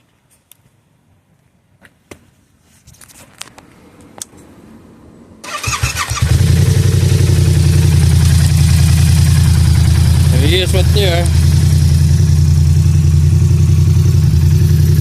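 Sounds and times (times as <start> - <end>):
motorcycle engine starting and idling: 5.4 - 15.0.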